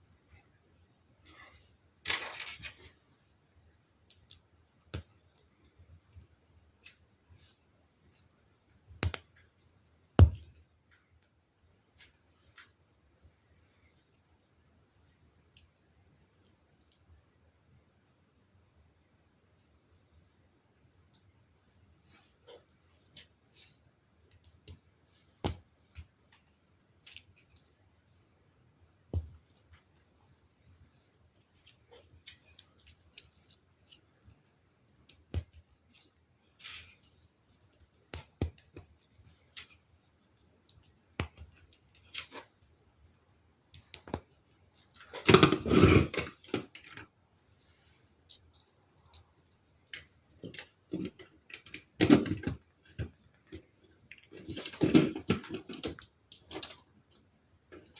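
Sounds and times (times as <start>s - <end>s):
plastic parts clicking and tapping: 48.3s - 57.9s.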